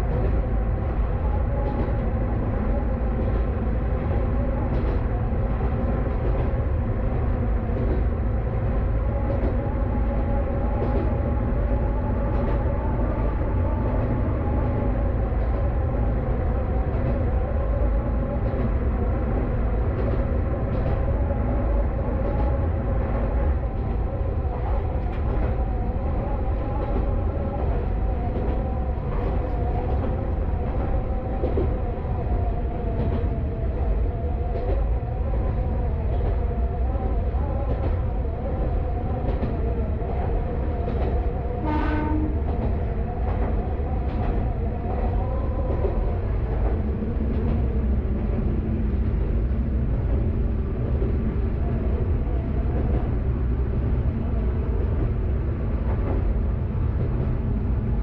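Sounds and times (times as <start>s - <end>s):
train horn blast: 41.6s - 42.4s.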